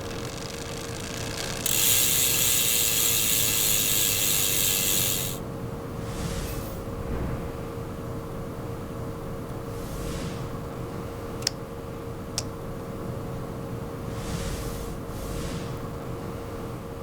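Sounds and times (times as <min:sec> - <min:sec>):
rapid mechanical ratcheting buzz: 0:00.0 - 0:05.4.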